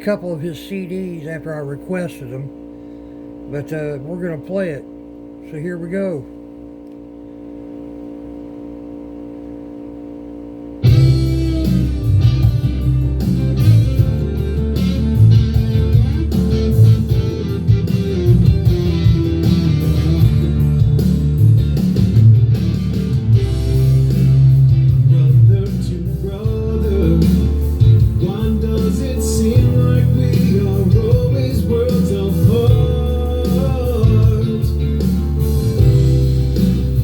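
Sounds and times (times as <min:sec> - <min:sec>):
steady hum: 0:00.0 - 0:37.0
strong bass line: 0:00.0 - 0:37.0
guitar song with singing: 0:10.8 - 0:37.0.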